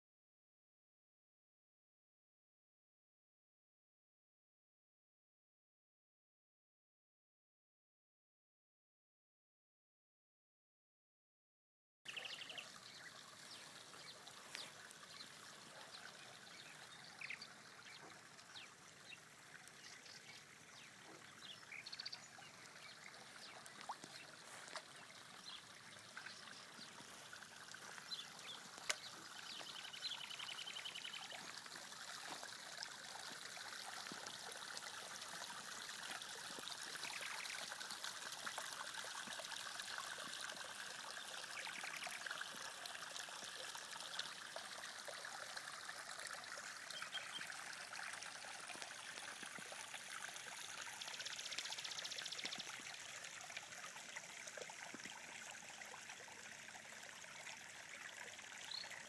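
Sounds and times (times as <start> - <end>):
stream trickling: 12.1 - 59.0.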